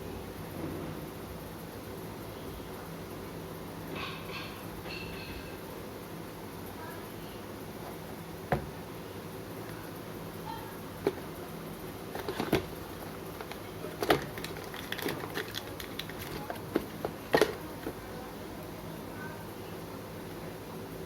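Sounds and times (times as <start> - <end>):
hands handling packaging clicks: 12.1 - 18.0.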